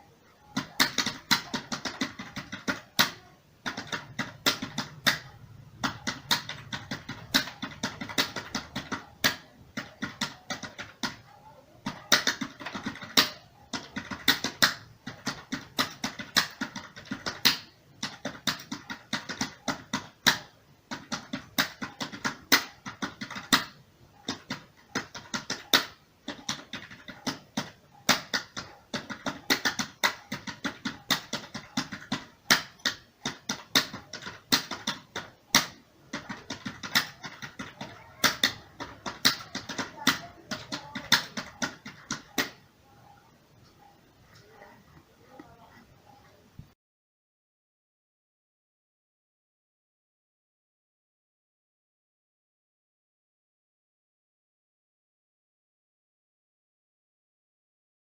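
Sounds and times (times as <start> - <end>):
computer keyboard typing: 0.4 - 45.5.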